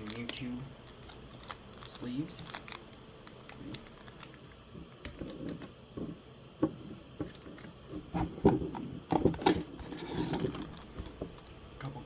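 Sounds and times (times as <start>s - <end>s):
light rustling: 0.0s - 4.4s
packaging clicks and taps: 0.0s - 4.4s.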